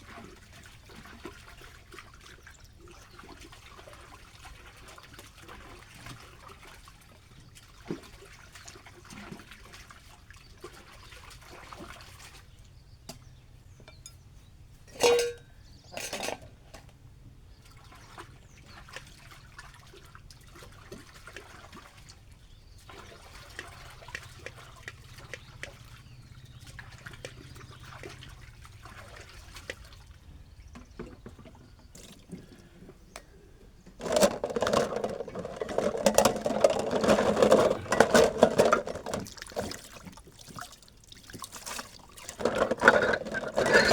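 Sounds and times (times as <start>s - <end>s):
water trickling and splashing: 0.0s - 13.8s, 17.4s - 43.9s
utensils clinking: 14.9s - 16.5s, 34.0s - 39.8s, 42.3s - 43.9s.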